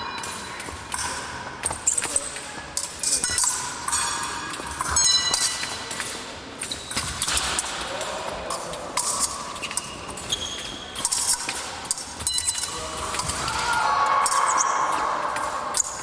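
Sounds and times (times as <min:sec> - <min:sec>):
shoes squeaking and stepping: 0:01.6 - 0:02.6, 0:09.2 - 0:11.6
blades clicking and ringing: 0:09.0 - 0:13.4.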